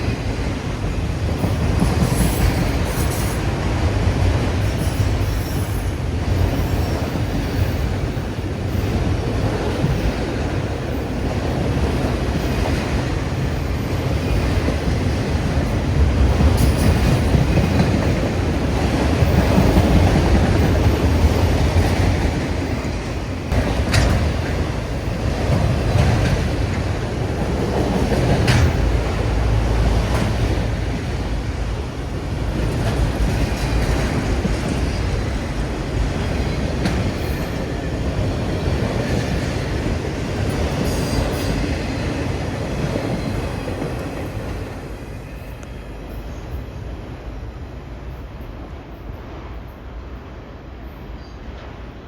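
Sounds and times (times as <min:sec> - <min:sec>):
clickety-clack over rail joints: 0:00.0 - 0:46.6
train wheels rumbling on rail: 0:00.0 - 0:52.0.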